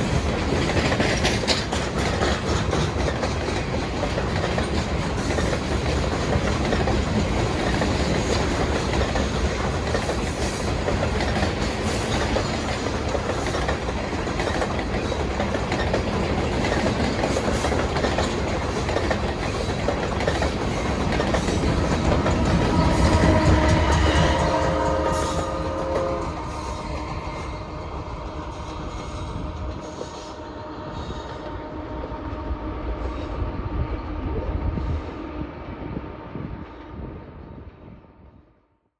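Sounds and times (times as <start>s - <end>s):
freight cars rattling on rails: 0.0s - 30.6s.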